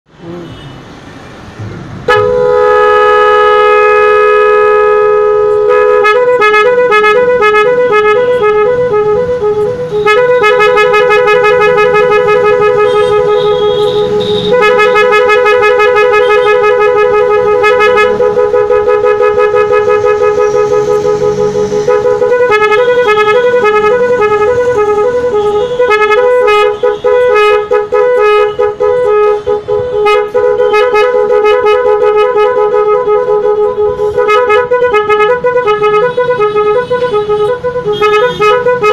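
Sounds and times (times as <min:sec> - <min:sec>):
electric horn two-note warbling: 0:02.1 - 0:25.2.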